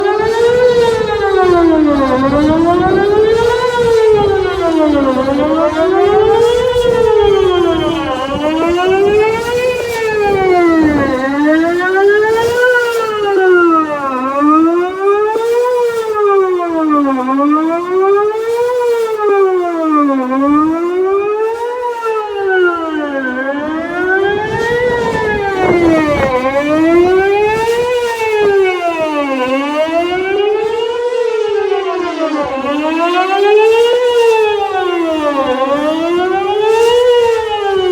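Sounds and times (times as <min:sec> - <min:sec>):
warning siren wailing: 0:00.0 - 0:37.9.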